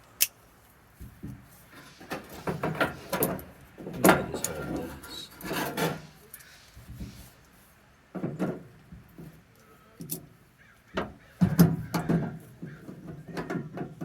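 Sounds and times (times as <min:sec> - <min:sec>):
hand tools clicking and scraping on metal: 0:01.3 - 0:07.6, 0:08.2 - 0:14.0.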